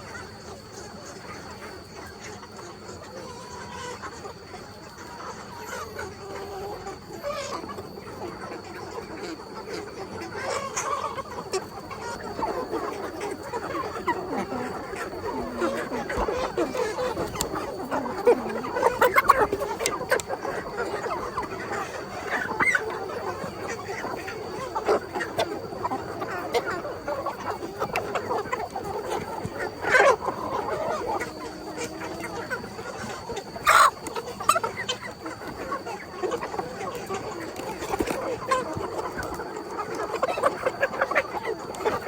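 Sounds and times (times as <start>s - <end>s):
chickens clucking: 0.0s - 42.0s.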